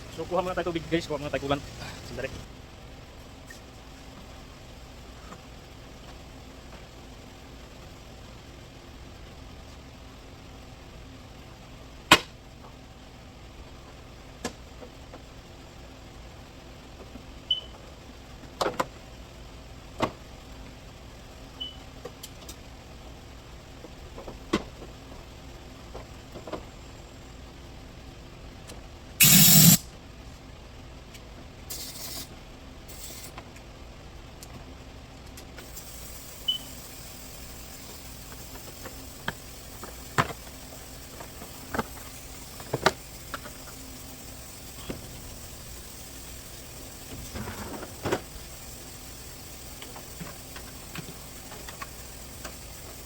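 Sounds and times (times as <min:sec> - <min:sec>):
steady background hum: 0:00.0 - 0:53.0
short burst of hiss: 0:29.2 - 0:29.8, 0:31.7 - 0:32.3, 0:32.9 - 0:33.3.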